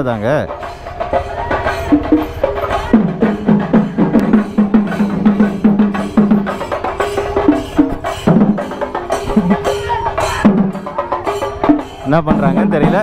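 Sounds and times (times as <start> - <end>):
drums beaten in fast rhythm: 0.0 - 13.0.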